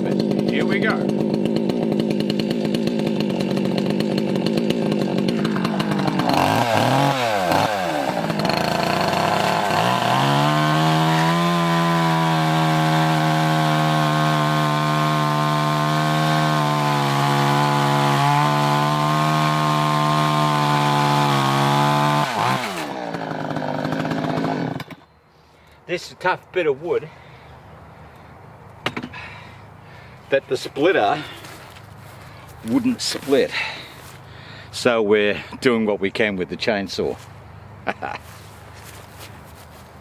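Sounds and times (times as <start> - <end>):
chainsaw cutting log: 0.0 - 25.1, 30.5 - 34.3, 38.3 - 40.0.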